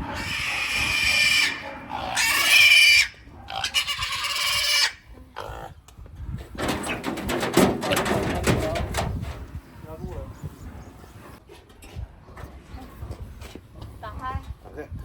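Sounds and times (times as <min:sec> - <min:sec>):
piglets squealing: 0:00.0 - 0:05.0.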